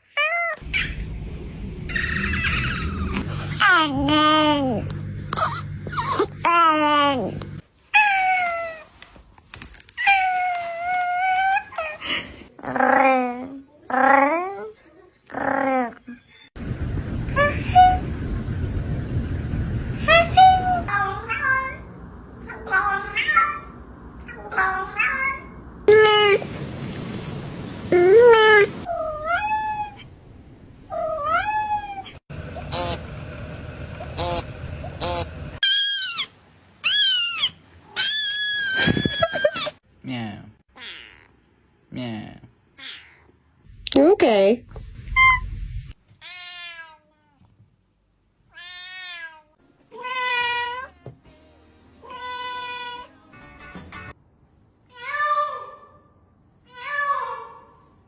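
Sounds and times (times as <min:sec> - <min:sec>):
cat meowing: 0:42.8 - 0:43.4, 0:46.2 - 0:47.4.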